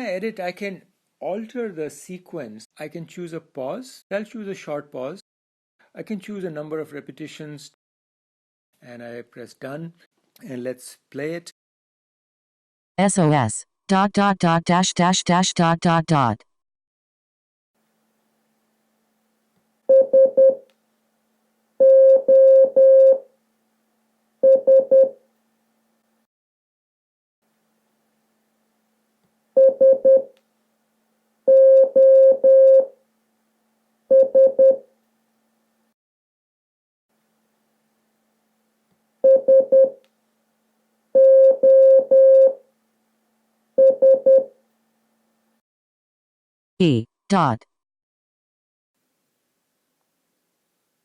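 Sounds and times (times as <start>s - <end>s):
morse code beeps: 19.9s - 20.6s, 21.8s - 23.2s, 24.4s - 25.1s, 29.6s - 30.3s, 31.5s - 32.9s, 34.1s - 34.8s, 39.3s - 40.0s, 41.2s - 42.6s, 43.8s - 44.5s.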